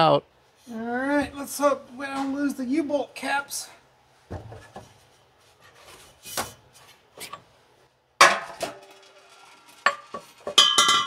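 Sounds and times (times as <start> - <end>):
wrench and metal parts clanking: 8.7 - 11.0.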